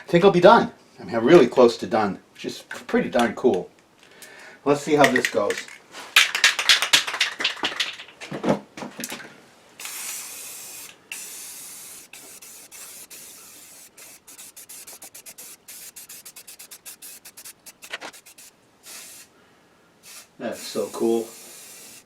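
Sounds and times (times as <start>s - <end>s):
spray can ball rattling: 5.0s - 8.2s, 9.8s - 19.3s, 20.0s - 22.0s
spray paint hissing: 9.8s - 19.3s, 20.0s - 22.0s.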